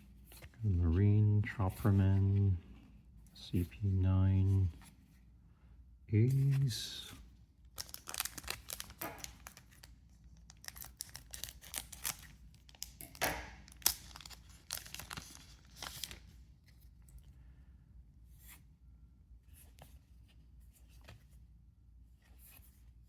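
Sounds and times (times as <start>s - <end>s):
foil pack tearing and crinkling: 7.8s - 9.9s, 10.5s - 16.2s.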